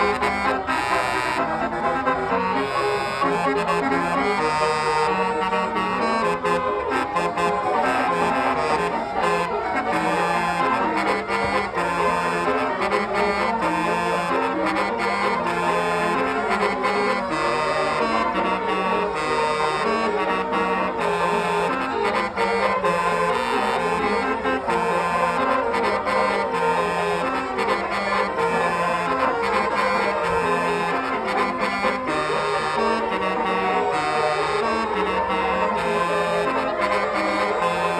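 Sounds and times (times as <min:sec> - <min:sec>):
musical bus horn playing tune: 0:00.0 - 0:37.9.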